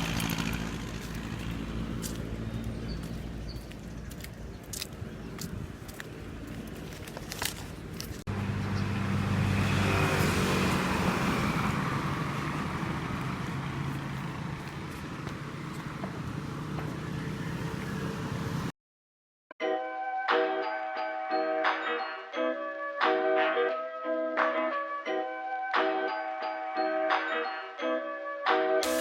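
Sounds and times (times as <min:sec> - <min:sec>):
vehicle engine hum: 0:00.0 - 0:18.7
road noise: 0:00.0 - 0:18.8.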